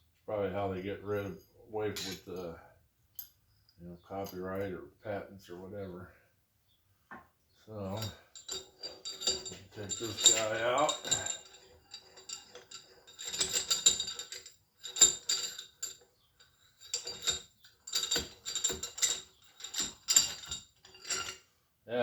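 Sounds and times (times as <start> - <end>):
metal vise parts clanking: 7.9 - 21.4.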